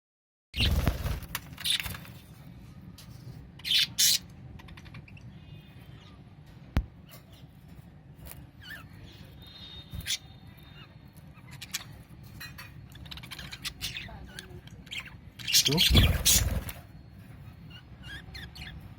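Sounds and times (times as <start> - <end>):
budgerigars chirping and squawking: 3.6 - 6.4, 7.0 - 18.9.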